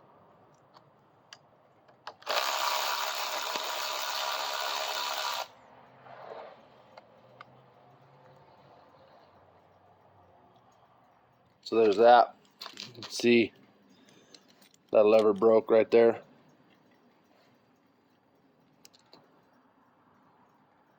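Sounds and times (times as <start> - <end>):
small power tool running: 2.2 - 5.6.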